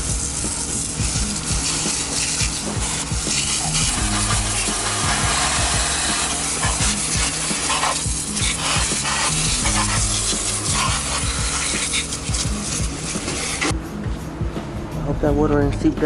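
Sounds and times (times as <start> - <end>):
water spraying onto engine: 0.0 - 13.7.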